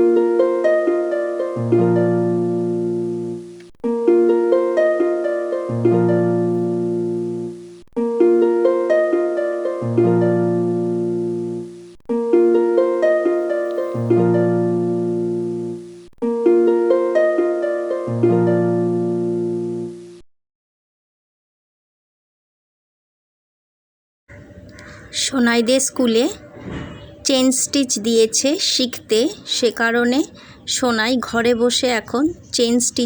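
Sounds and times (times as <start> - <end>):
plucked harp-like melody: 0.0 - 20.1.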